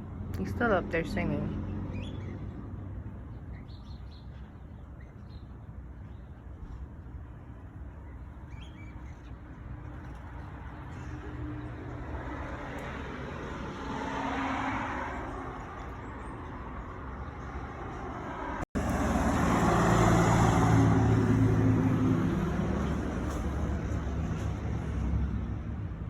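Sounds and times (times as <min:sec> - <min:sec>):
vehicle engine humming: 0:09.4 - 0:26.0
car passing: 0:10.3 - 0:26.0.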